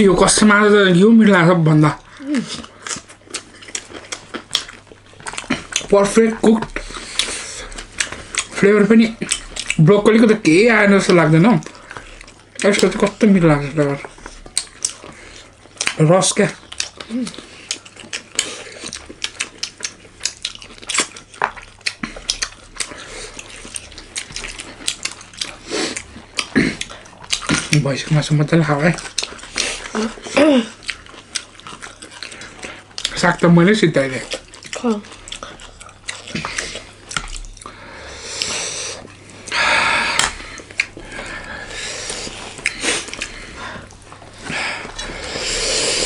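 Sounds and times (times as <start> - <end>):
chewing: 0.2 - 46.0
wheezy sniff: 37.7 - 40.4, 41.2 - 46.0
breathing through blocked nose: 37.7 - 46.0.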